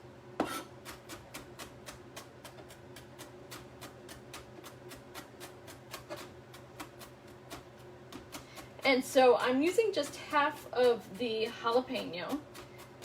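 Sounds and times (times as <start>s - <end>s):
knife chopping on cutting board: 0.4s - 8.8s.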